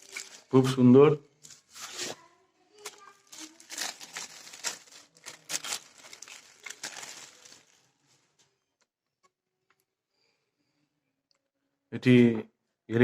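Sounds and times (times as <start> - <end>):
packaging crinkling: 0.0 - 0.8, 1.4 - 2.2, 2.8 - 8.4.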